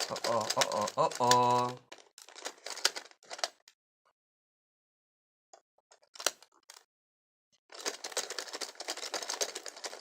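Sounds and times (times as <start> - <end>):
fast plastic rattling clatter: 0.0 - 3.6, 7.7 - 10.0.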